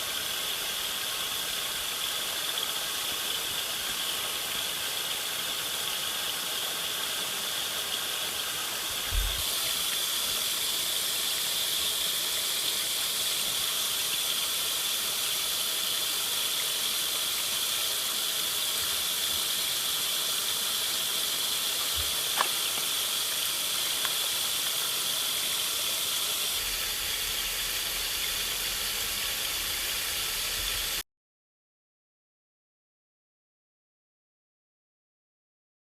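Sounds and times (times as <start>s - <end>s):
steady rain falling: 0.6s - 30.7s
faint taps and low thumps: 9.0s - 9.4s.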